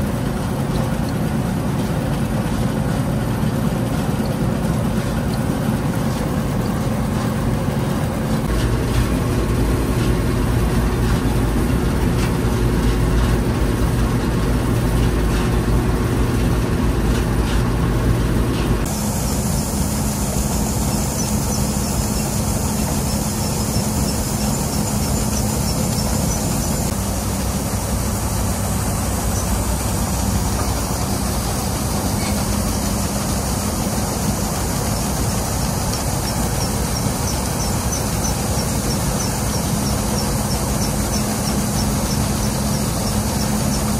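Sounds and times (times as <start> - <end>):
diesel engine running: 0.0 - 43.9
high hiss: 18.9 - 43.9.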